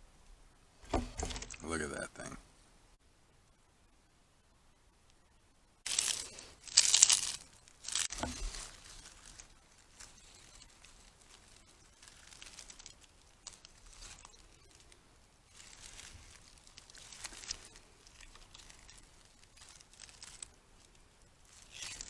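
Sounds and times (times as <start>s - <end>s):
faint rustling: 5.8s - 22.0s
wrapping crinkling and tearing: 5.9s - 22.0s.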